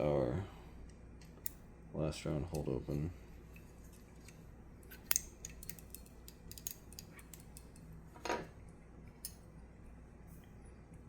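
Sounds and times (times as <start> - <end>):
steel pistol parts clicking: 5.0 - 7.8.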